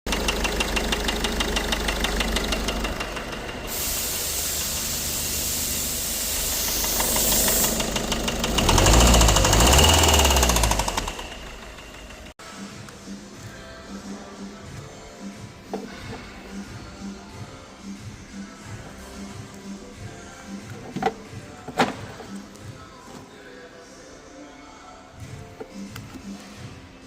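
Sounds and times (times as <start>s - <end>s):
diesel engine knocking: 0.1s - 12.4s
loud hiss: 3.6s - 8.3s.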